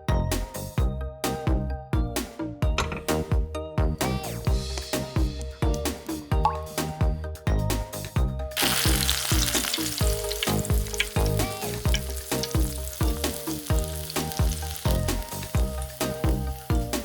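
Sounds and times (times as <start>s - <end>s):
food sizzling in hot oil: 8.6s - 17.0s.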